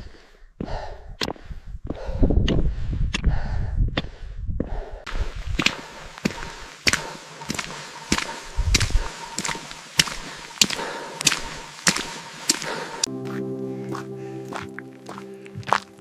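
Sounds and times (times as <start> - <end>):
footsteps on rocky path: 4.0 - 16.0
background music: 13.1 - 16.0.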